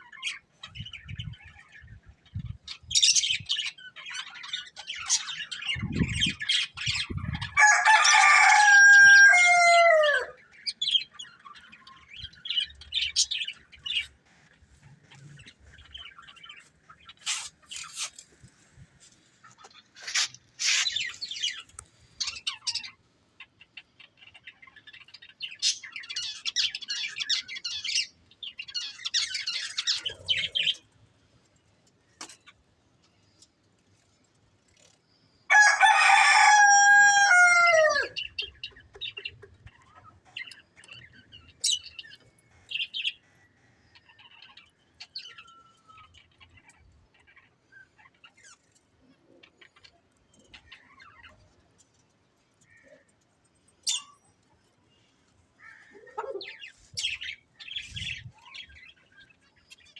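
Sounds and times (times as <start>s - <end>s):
rooster crowing: 7.6s - 10.4s, 35.5s - 38.2s.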